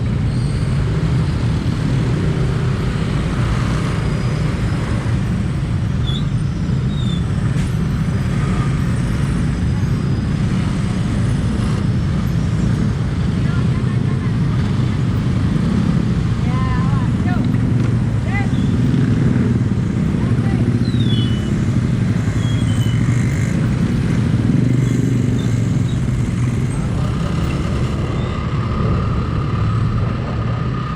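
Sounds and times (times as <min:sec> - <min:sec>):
road traffic rumble: 0:00.0 - 0:30.9.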